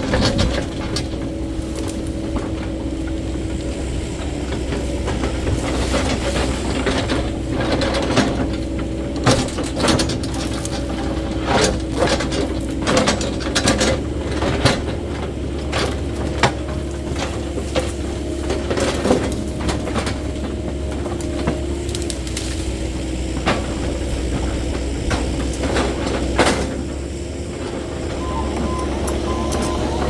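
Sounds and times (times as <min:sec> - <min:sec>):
excavator engine hum with whine: 0:00.0 - 0:30.0
brush cracking and knocking: 0:16.1 - 0:22.8.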